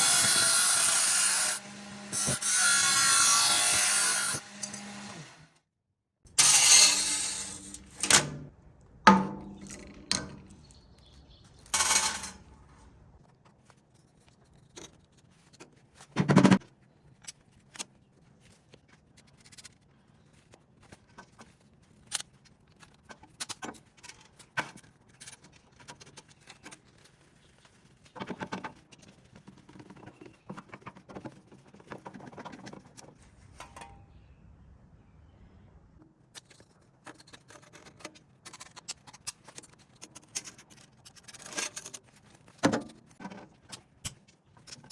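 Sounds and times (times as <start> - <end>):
clicks and scrapes on steel: 36.2 - 44.9.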